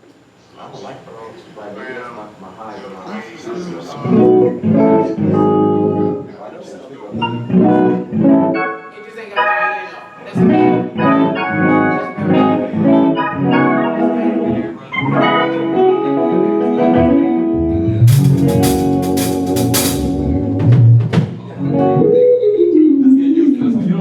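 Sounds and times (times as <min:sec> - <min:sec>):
music with held chords: 0:04.1 - 0:06.2, 0:09.4 - 0:21.1
heavy bass: 0:17.6 - 0:21.2
sharp percussive hits: 0:18.1 - 0:20.4.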